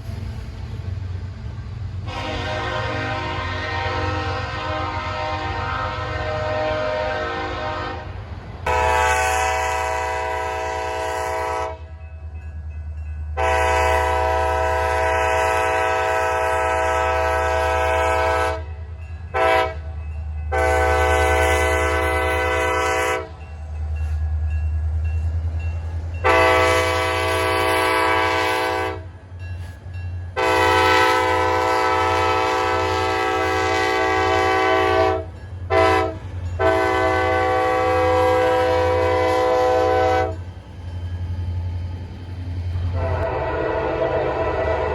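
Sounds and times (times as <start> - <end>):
locomotive rumble: 0.0 - 44.9
locomotive air horn blasts: 2.0 - 12.0, 13.4 - 18.7, 19.3 - 19.9, 20.5 - 23.4, 26.2 - 29.1, 30.4 - 40.4, 42.9 - 44.9.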